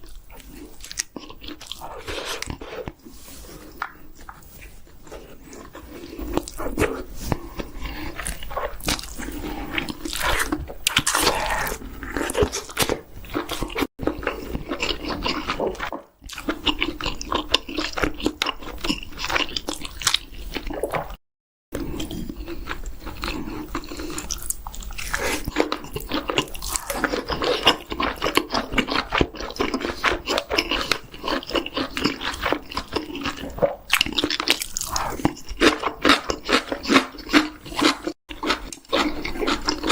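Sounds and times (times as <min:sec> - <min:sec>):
person chewing crunchy chicken: 0:00.0 - 0:21.2, 0:21.8 - 0:39.9.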